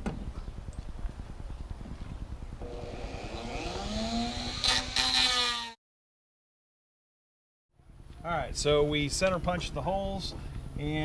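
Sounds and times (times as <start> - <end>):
rotary tool grinding: 2.6 - 5.8.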